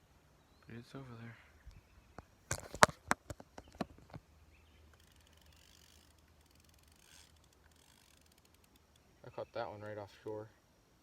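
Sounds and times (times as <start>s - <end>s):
fishing reel ticking: 4.9s - 9.1s.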